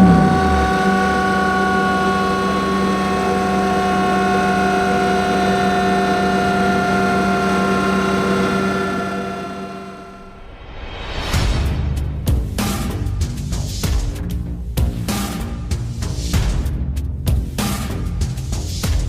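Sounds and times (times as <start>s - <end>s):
motorcycle wheel whining on dyno: 0.0s - 10.4s.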